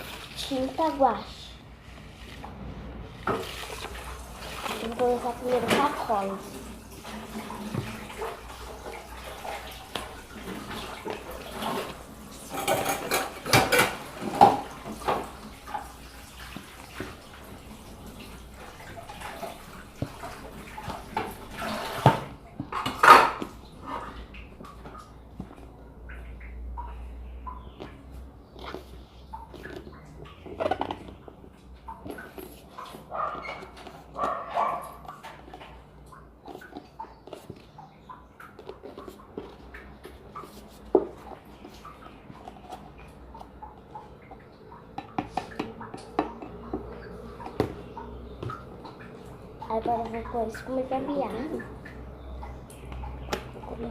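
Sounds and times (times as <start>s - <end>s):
glue squelching and pouring: 1.7s - 6.6s.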